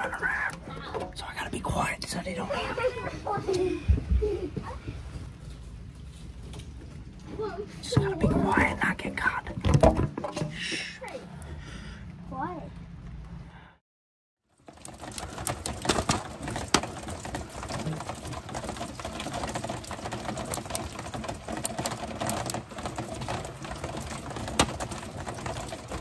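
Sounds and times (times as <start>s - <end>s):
steady rain patter: 0.0s - 6.6s, 14.5s - 26.0s
sharp raindrop clicks: 14.5s - 26.0s.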